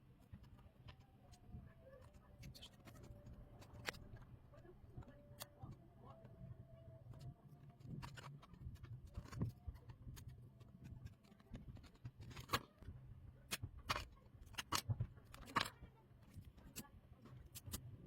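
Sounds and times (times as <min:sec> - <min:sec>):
clicks of small hard parts: 0:13.5 - 0:16.8.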